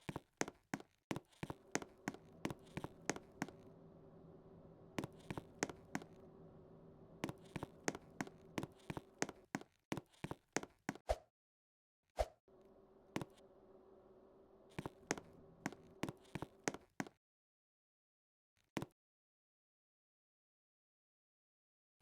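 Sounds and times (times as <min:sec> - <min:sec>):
ceiling fan motor humming: 0:01.6 - 0:09.4, 0:12.5 - 0:16.7.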